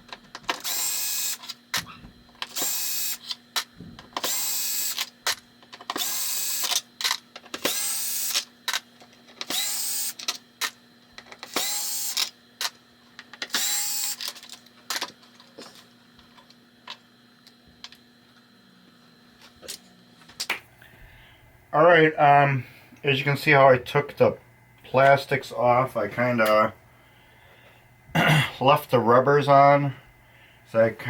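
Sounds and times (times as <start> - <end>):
power screwdriver whining: 0.4 - 8.8, 9.4 - 12.8, 13.4 - 14.6.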